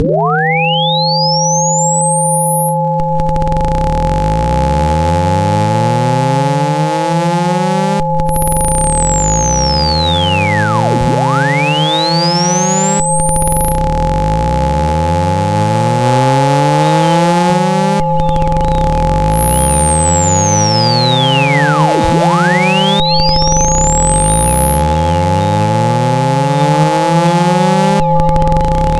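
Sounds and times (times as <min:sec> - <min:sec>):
pure tone sweeping up and down: 0:00.0 - 0:28.9
steady mid and low hums: 0:02.6 - 0:28.9
rising low chirps: 0:02.9 - 0:26.8.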